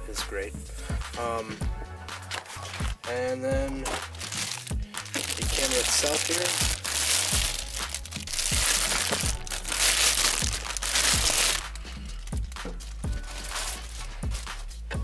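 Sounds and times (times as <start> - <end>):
background music with steady beat: 0.0 - 15.0
packaging crinkling and rustling: 3.9 - 11.6, 13.2 - 14.4.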